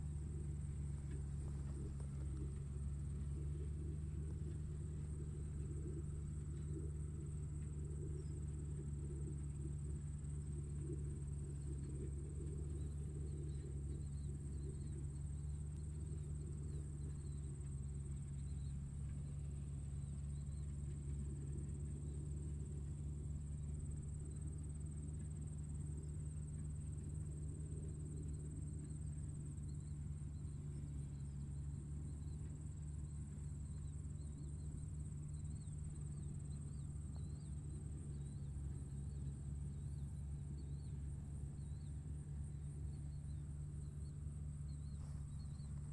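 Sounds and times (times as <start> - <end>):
tractor engine running: 0.0 - 24.1
faint chirps: 0.5 - 45.9.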